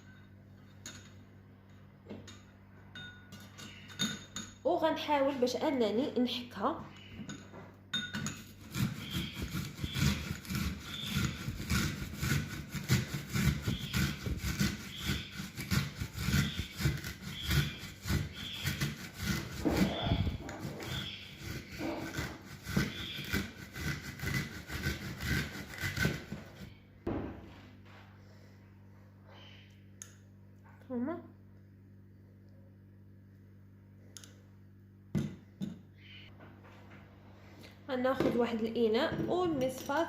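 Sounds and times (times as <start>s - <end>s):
onion grating on grater: 8.4s - 26.7s.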